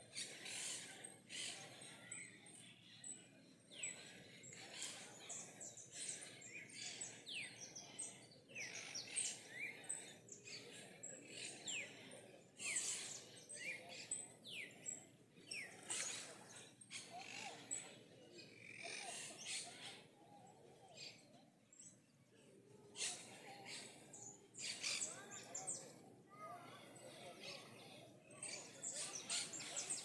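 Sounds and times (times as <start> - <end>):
faint outdoor background: 0.0 - 30.0.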